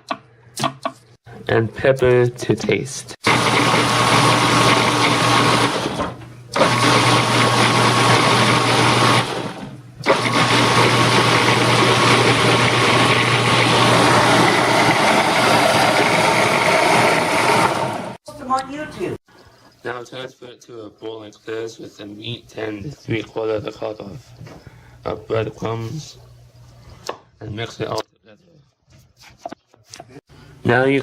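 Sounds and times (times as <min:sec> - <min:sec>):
food processor chopping vegetables: 0:03.2 - 0:18.2.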